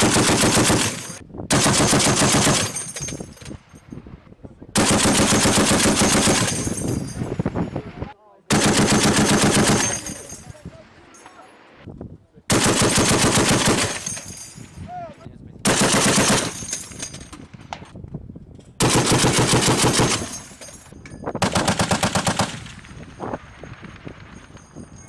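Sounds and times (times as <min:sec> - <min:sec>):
heavy machine gun bursts: 0:00.0 - 0:03.1, 0:04.8 - 0:06.8, 0:08.5 - 0:10.3, 0:12.5 - 0:14.3, 0:15.7 - 0:17.0, 0:18.8 - 0:20.6.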